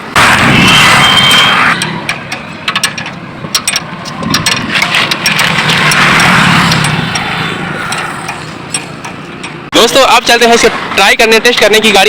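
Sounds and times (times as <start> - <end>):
sharp clicks and knocks: 0.1 - 9.7.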